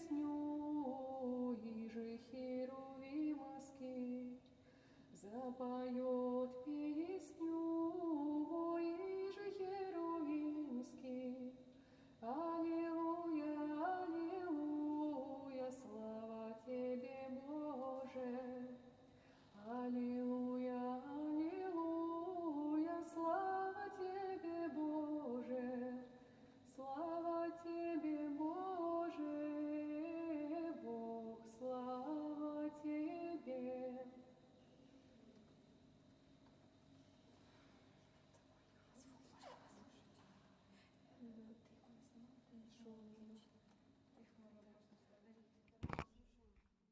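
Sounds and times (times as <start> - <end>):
woman singing unaccompanied: 0.0 - 4.5, 5.1 - 19.0, 19.6 - 34.4.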